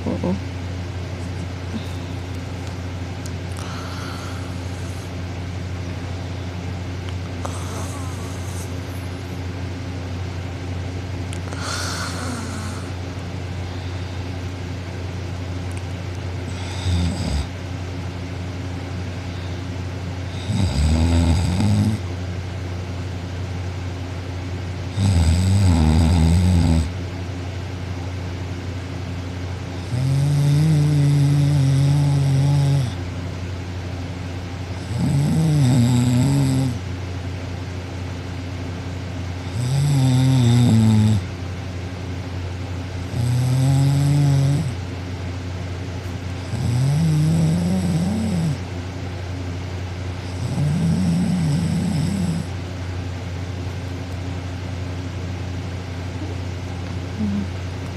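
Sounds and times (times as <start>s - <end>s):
girl snoring loudly: 3.6s - 5.1s, 7.4s - 8.8s, 11.5s - 13.0s, 16.5s - 17.5s, 20.3s - 22.0s, 25.0s - 26.9s, 29.8s - 33.0s, 34.8s - 36.8s, 39.5s - 41.2s, 43.1s - 44.8s, 46.5s - 48.6s, 50.2s - 52.5s, 57.2s - 57.5s.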